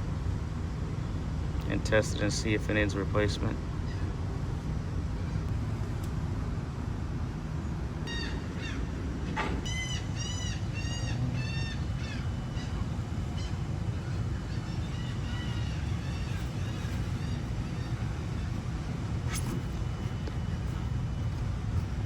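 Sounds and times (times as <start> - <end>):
steady low rumble: 0.0 - 22.0
bird calling: 8.0 - 22.0.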